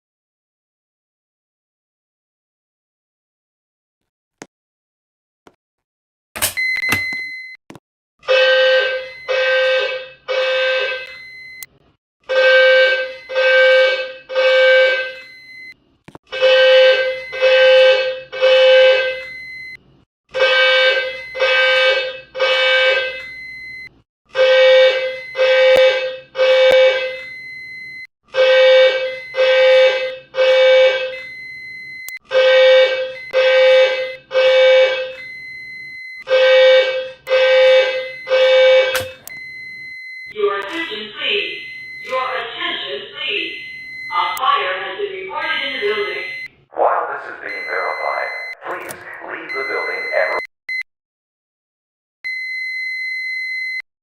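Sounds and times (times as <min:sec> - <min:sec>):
fire alarm horn blasts: 0:08.2 - 0:50.8, 0:52.3 - 0:53.8.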